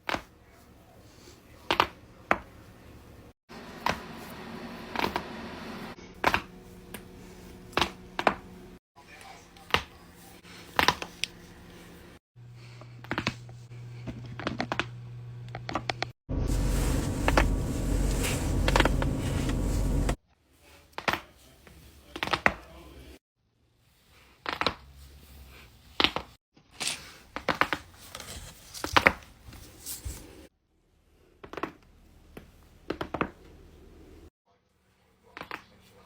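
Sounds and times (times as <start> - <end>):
loud steady hum: 16.3 - 20.2.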